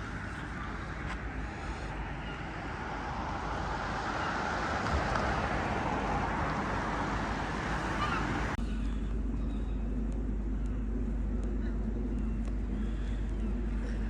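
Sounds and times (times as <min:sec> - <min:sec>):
vehicle passing: 0:00.0 - 0:08.6
road traffic: 0:00.0 - 0:14.0.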